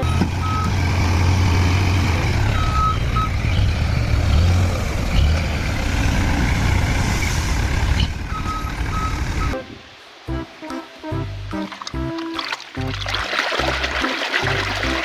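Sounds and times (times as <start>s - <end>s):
reversing beeps: 0.0s - 0.8s, 2.5s - 3.4s, 8.3s - 9.6s
truck engine rumbling: 0.0s - 15.0s.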